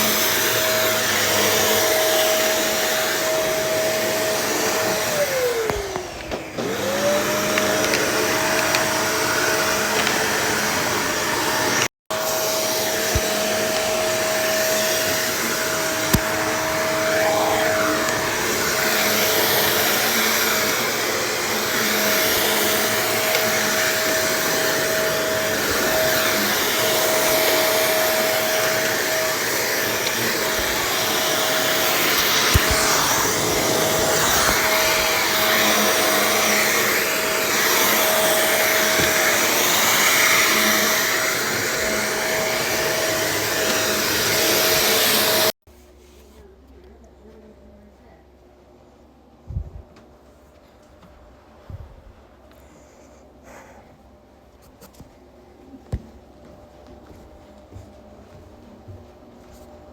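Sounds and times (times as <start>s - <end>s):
vacuum cleaner running: 0.0s - 45.6s.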